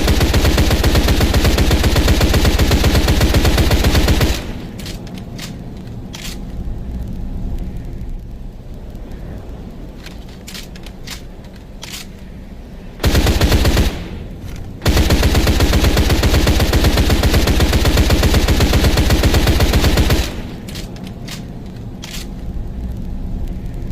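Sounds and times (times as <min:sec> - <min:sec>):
submachine gun firing full auto: 0:00.0 - 0:04.7, 0:13.0 - 0:14.1, 0:14.8 - 0:20.6
low rumble: 0:00.0 - 0:23.9.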